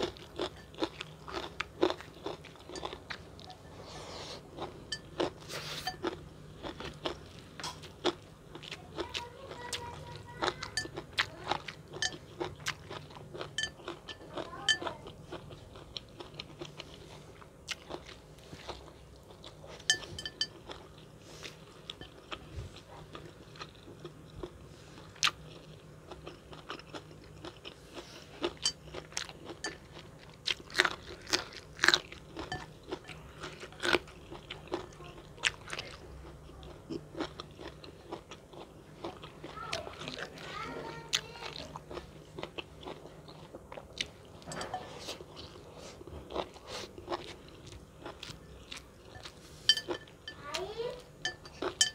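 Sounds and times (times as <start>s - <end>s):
crunching bites and chewing: 0.0s - 3.6s, 15.2s - 40.4s.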